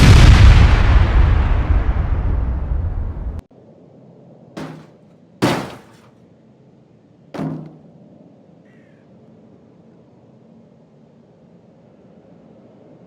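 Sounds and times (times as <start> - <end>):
crashing impacts: 4.6 - 6.1, 7.4 - 8.0.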